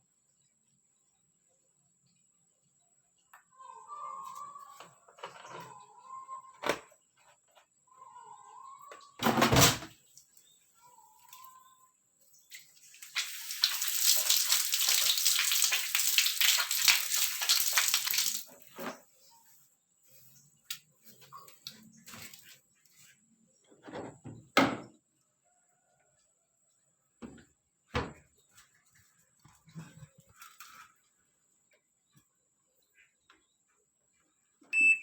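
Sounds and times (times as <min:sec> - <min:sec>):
water rushing into tub: 0:12.8 - 0:18.5
washing machine thump: 0:28.0 - 0:28.2.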